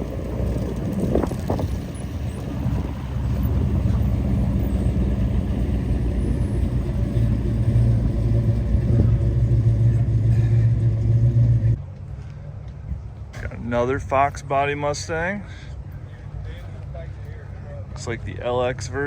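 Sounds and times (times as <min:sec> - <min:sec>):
car engine rumbling: 0:00.0 - 0:19.0.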